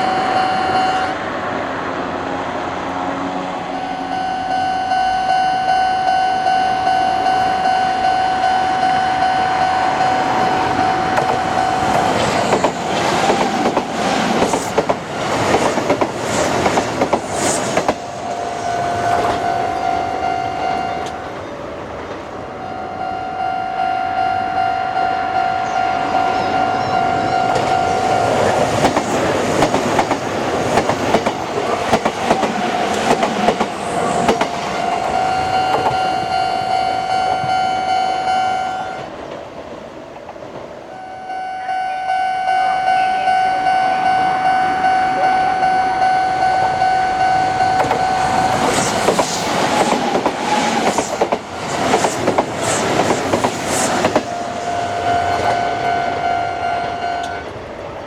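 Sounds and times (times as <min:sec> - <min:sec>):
level-crossing alarm ringing: 0:00.0 - 0:01.1, 0:03.7 - 0:14.9, 0:17.8 - 0:21.4, 0:22.5 - 0:29.0, 0:31.0 - 0:39.0, 0:41.0 - 0:49.2, 0:53.0 - 0:57.5
train wheels clattering over rails: 0:10.4 - 0:20.0, 0:27.4 - 0:36.2, 0:47.7 - 0:55.6.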